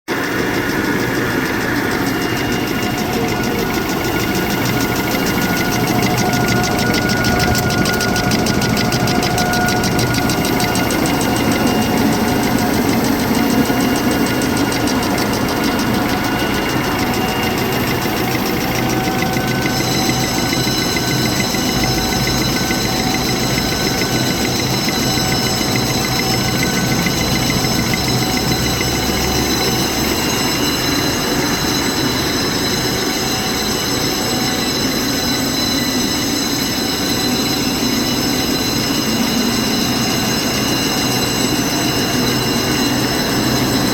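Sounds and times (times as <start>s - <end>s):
fast mechanical rattle: 0.1s - 33.8s
machine hum: 0.1s - 34.1s
high whining tones: 0.1s - 43.9s.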